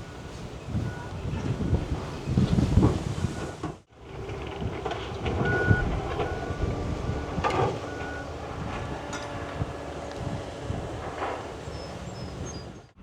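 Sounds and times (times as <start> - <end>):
vehicle backup alarm beeping: 0.0 - 2.4, 5.4 - 9.9
low engine rumble: 0.0 - 13.0.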